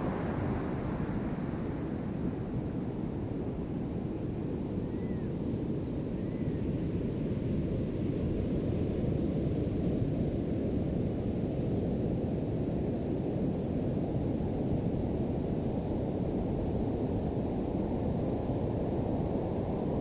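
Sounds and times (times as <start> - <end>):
ocean surf on a beach: 0.0 - 2.6.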